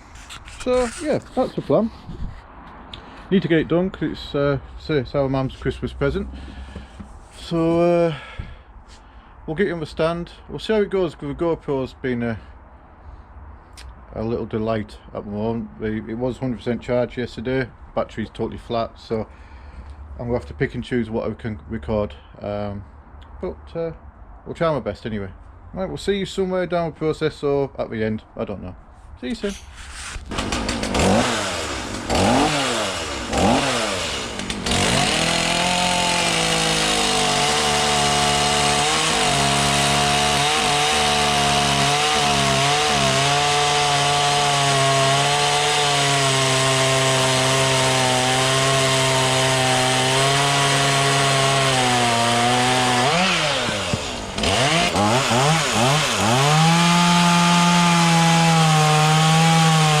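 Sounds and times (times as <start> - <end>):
chainsaw cutting wood: 6.2 - 7.6, 29.5 - 60.0.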